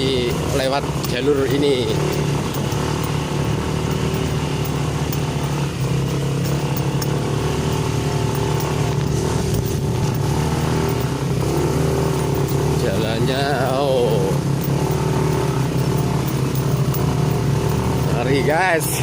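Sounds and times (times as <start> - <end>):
motorcycle engine low drone: 0.0 - 19.0.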